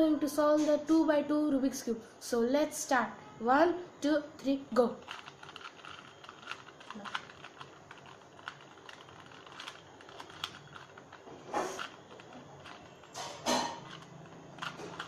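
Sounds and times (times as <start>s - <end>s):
puzzle cube rasping turn: 4.8s - 15.0s
puzzle cube clicking: 5.0s - 15.0s.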